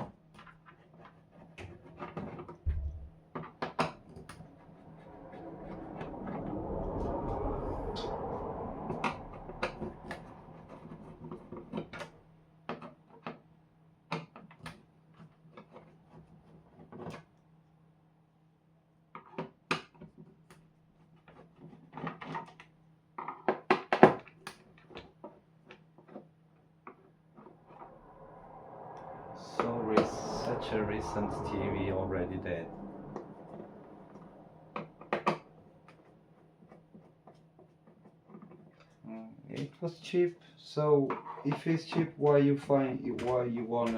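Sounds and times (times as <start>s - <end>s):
faint steady hum: 27.6s - 36.0s.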